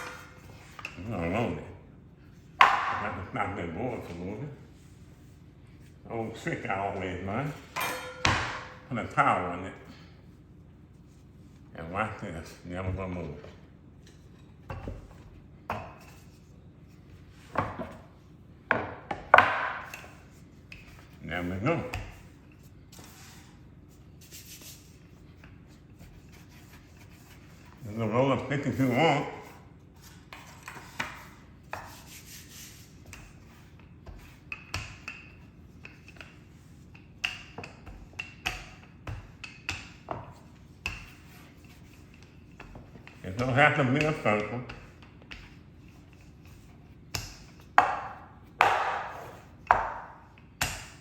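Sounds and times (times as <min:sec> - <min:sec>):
rolling pin knocking on board: 0:02.6 - 0:03.0, 0:18.7 - 0:20.0, 0:47.8 - 0:50.9
rolling pin rubbing dough: 0:19.6 - 0:51.0.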